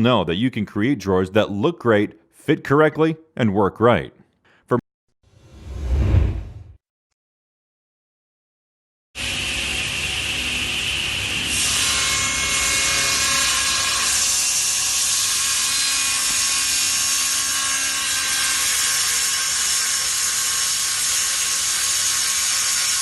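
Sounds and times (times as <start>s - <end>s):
power saw cutting wood: 9.2s - 23.0s.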